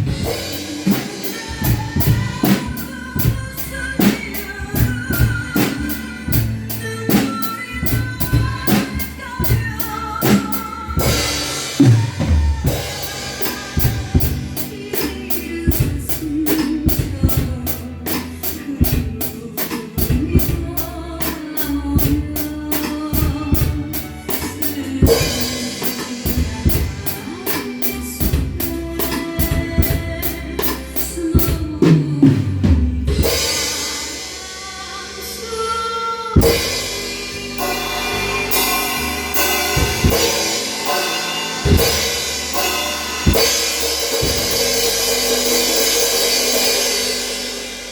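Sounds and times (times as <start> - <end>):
ballad backing track: 0.0 - 47.9
drum kit playing: 0.0 - 47.9
cymbal crashes: 36.4 - 47.9.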